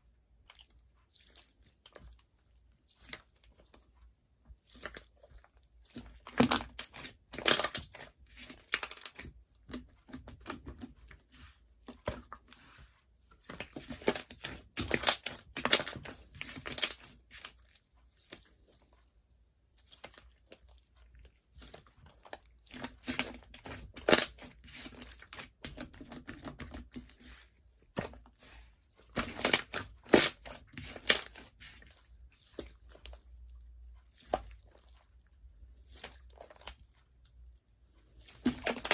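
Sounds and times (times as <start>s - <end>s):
slime crackling and popping: 13.8s - 17.2s, 38.4s - 38.9s.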